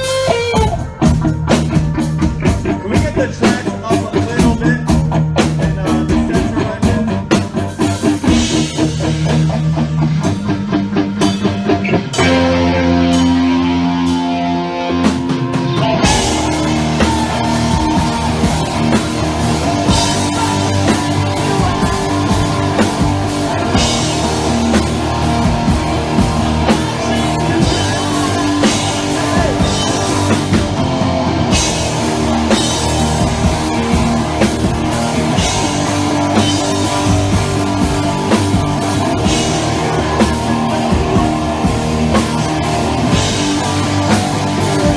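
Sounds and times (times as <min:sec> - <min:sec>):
electric guitar chords: 0:00.0 - 0:44.9
rock band playing live: 0:00.0 - 0:44.9.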